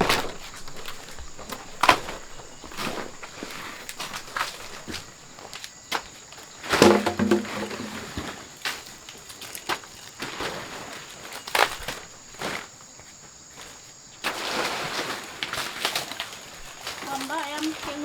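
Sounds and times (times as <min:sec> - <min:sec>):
knocks and rustles: 0:00.0 - 0:12.7
footsteps: 0:00.0 - 0:18.0.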